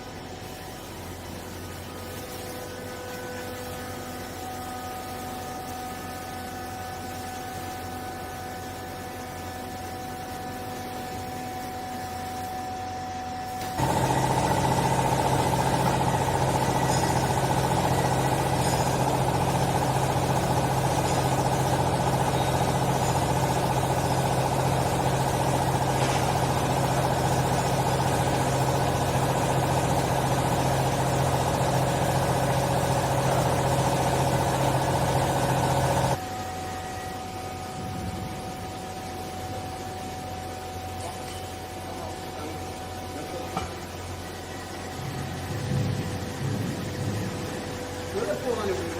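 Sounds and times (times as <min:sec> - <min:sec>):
hydraulic pump motor humming: 0:13.5 - 0:36.3.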